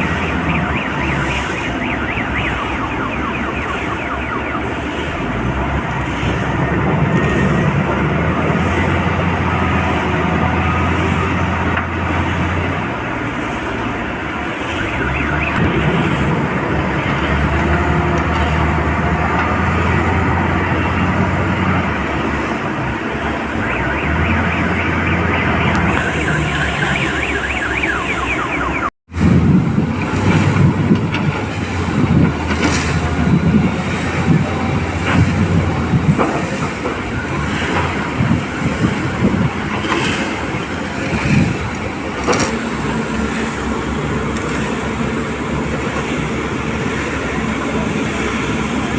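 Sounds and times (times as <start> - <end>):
diesel excavator engines: 0.0 - 48.9
high repeating squeal: 23.4 - 28.9
knocks and scrapes: 30.0 - 43.4.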